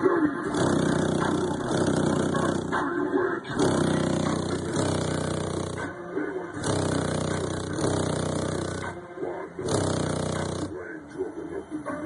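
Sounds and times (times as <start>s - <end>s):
bass-heavy music through subwoofers: 3.6s - 5.9s.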